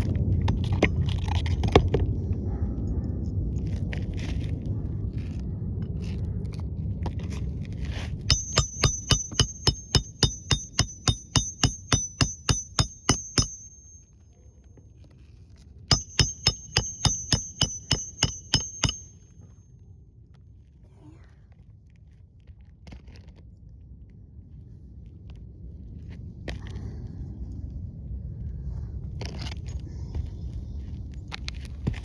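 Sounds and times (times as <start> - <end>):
low rumbling and scraping: 0.0 - 32.0
hammer tapping metal: 8.3 - 14.2, 15.9 - 19.2.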